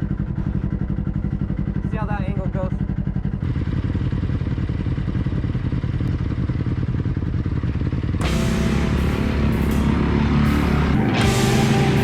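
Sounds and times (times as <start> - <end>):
car engine running: 0.0 - 12.0
loud music with heavy beat: 8.2 - 12.0.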